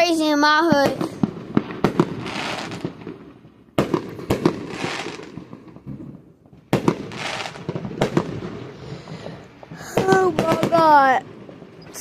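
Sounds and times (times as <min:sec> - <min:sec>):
crackling fireworks hiss: 0:00.0 - 0:12.0
fireworks bangs: 0:00.0 - 0:12.0.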